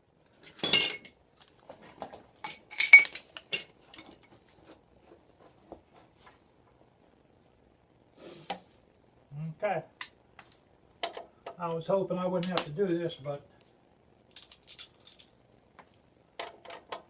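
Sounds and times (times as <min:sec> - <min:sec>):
metal hand tools clinking: 0:00.4 - 0:01.6, 0:02.4 - 0:04.2, 0:12.2 - 0:12.8.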